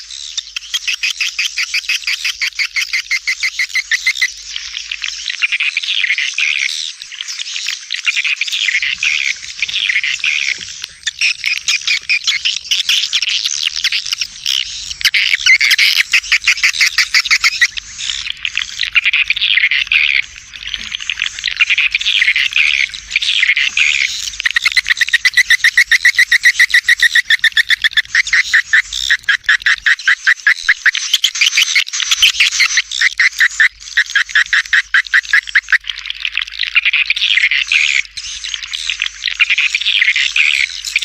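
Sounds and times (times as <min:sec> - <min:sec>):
swiftlets twittering: 0:09.1 - 0:35.8.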